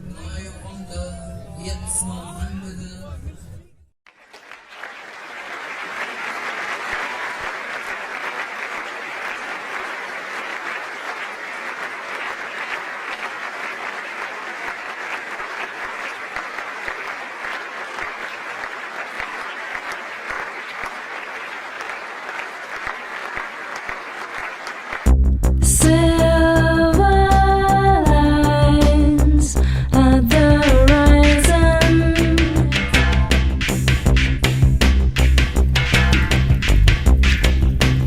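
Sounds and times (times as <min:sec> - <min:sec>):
crowd applauding: 0:04.1 - 0:25.1.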